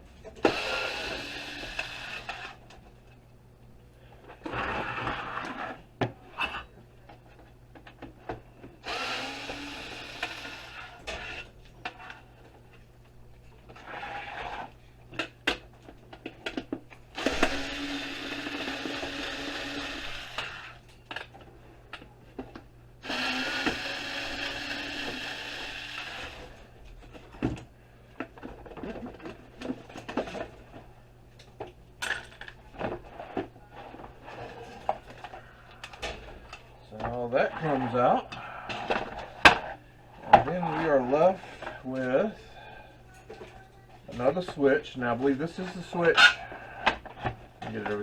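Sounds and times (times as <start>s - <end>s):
cordless drill running: 0.4s - 2.6s, 8.8s - 11.0s, 17.1s - 20.8s, 23.0s - 26.6s.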